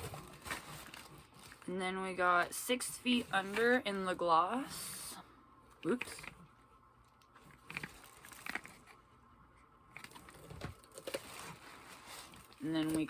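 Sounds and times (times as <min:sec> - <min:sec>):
light clicks and packaging crinkles: 0:00.0 - 0:01.7, 0:05.7 - 0:13.0.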